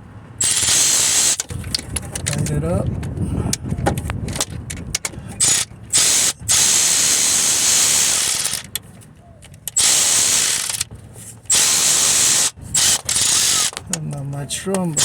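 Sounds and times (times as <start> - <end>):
ratchet wrench clicking: 0.4 - 2.5, 4.3 - 8.8, 9.5 - 10.9, 11.5 - 14.0.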